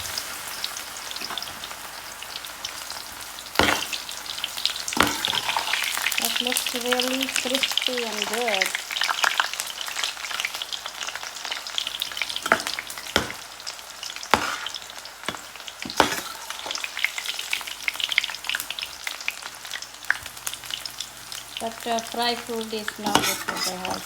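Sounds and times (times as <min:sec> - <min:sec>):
leaves deep-frying in hot oil: 0:00.0 - 0:24.0.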